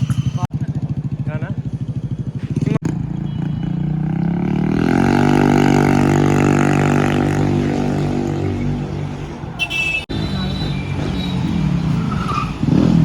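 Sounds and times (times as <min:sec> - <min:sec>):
scooter engine revving: 0:00.0 - 0:08.6.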